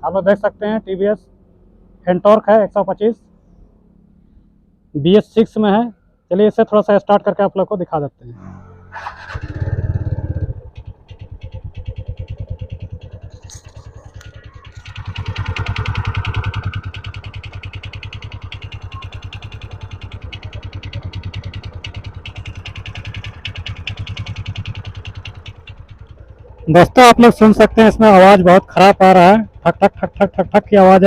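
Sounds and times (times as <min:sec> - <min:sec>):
scooter engine idling with knocking: 0:09.9 - 0:31.0.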